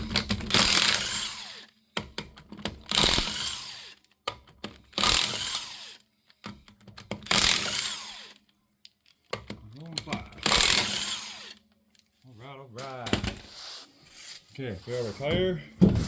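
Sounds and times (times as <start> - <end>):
impact wrench zipping lug nuts: 0.1 - 1.7, 2.7 - 4.0, 4.9 - 6.0, 7.1 - 8.4, 10.4 - 11.6.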